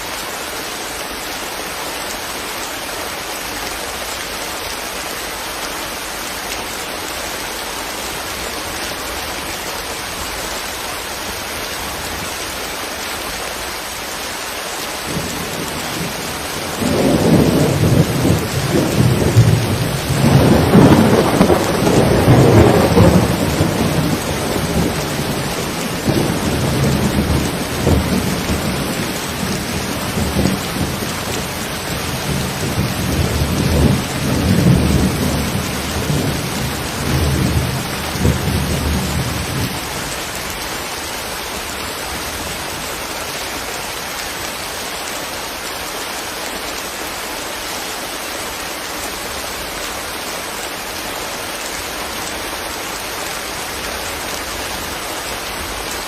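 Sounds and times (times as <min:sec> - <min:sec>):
steady rain falling: 0:00.0 - 0:56.0
thunder rumbling: 0:15.1 - 0:40.1.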